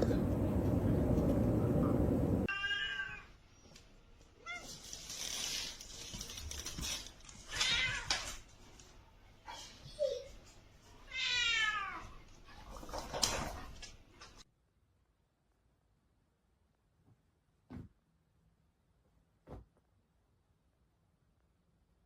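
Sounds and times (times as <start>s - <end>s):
cat meowing: 2.5s - 3.3s, 11.1s - 12.1s.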